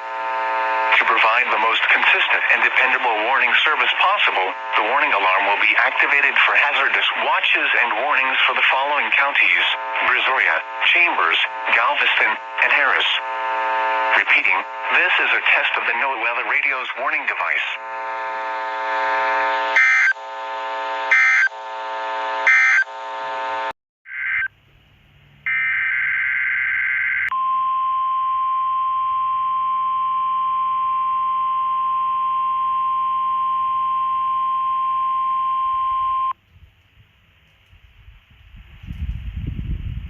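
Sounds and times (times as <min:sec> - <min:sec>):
steady warning alarm tone: 0:00.1 - 0:24.5, 0:25.5 - 0:36.4
faint radio static: 0:00.1 - 0:24.6
buzzy digital data bursts: 0:00.7 - 0:24.5.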